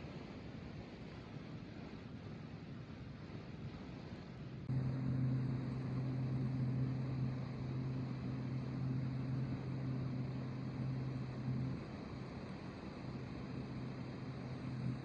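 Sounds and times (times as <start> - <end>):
diesel engine humming: 4.7 - 15.0
field noise: 4.7 - 15.0.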